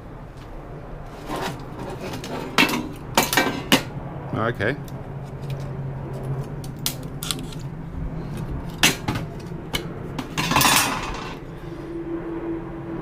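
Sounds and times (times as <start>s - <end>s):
metal scraping: 1.1s - 3.9s, 8.3s - 12.0s.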